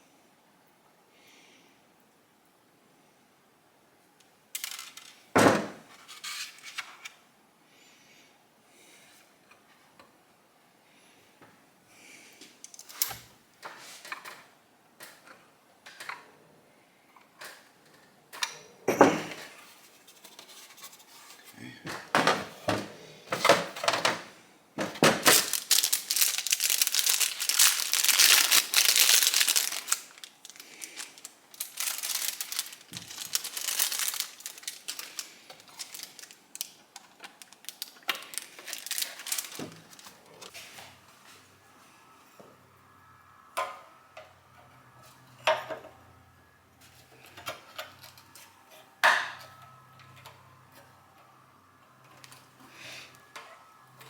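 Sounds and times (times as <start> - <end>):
clicks and knocks of small parts: 4.6 - 5.2, 12.6 - 13.2
rustling and crinkling: 19.5 - 41.4.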